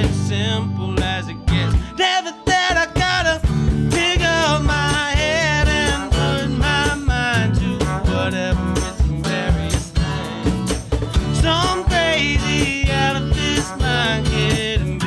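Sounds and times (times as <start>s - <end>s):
live jazz band groove: 0.0s - 15.0s
trombone melody: 3.5s - 10.7s, 11.3s - 15.0s.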